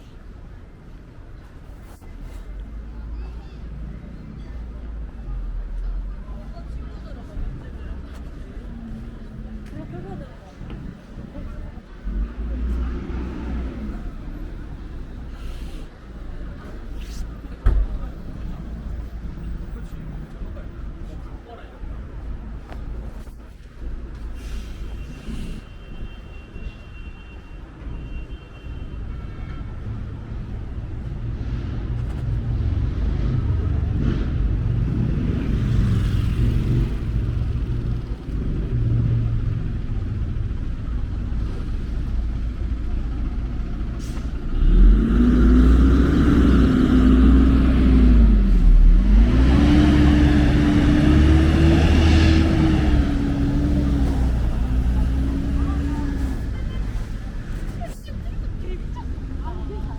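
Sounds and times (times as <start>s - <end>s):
low traffic rumble: 0.0s - 59.9s
vehicle engine accelerating: 31.4s - 42.7s, 43.3s - 56.6s
car driving by: 44.1s - 57.0s.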